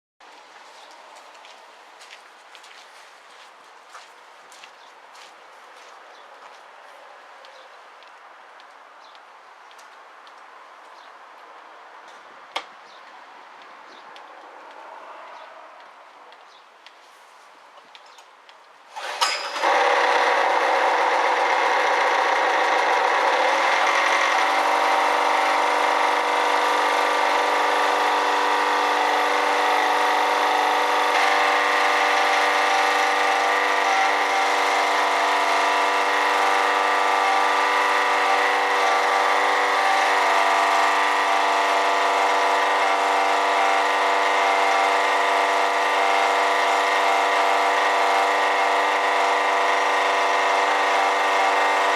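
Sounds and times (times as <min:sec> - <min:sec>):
generator starting and running: 0:18.9 - 0:51.9.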